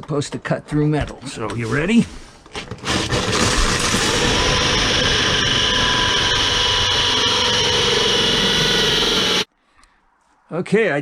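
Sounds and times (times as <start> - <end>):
hole saw cutting steel: 2.7 - 9.5
high squealing tones: 2.9 - 9.5.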